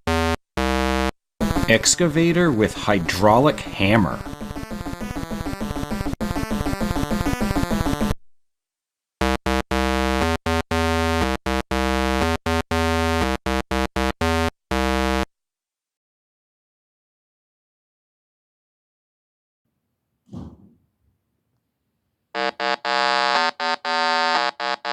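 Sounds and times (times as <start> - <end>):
buzzy synthesized chord: 0.1 - 8.2.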